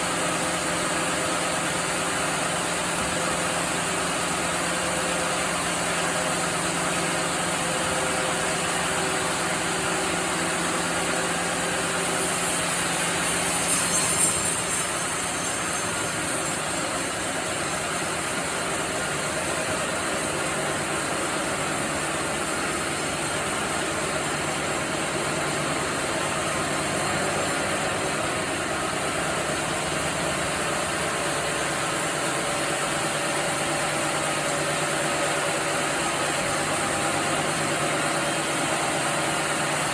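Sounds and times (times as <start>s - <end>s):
sawmill machinery drone: 0.0s - 39.9s
high hiss: 11.8s - 18.1s.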